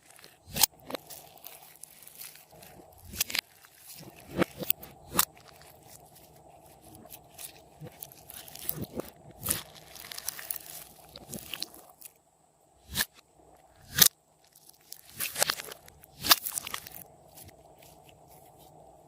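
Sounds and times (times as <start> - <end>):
slime popping and crackling: 0.0 - 12.1, 13.9 - 17.0.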